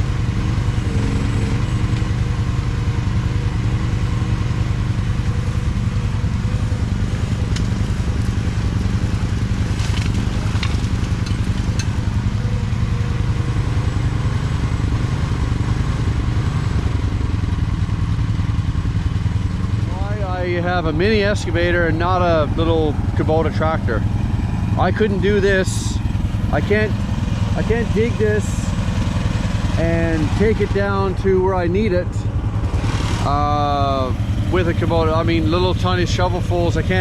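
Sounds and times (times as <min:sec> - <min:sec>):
excavator engine running: 0:00.0 - 0:37.0.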